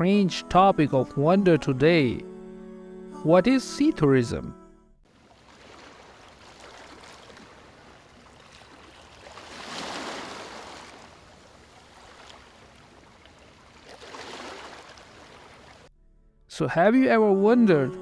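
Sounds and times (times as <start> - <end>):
wind rustling tree leaves: 5.1 - 15.9.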